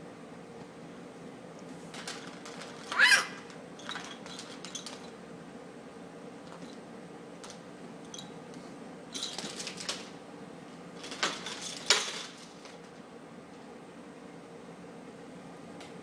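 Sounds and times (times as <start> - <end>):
baby toys clattering: 1.9 - 3.1, 3.8 - 5.1, 11.0 - 12.8.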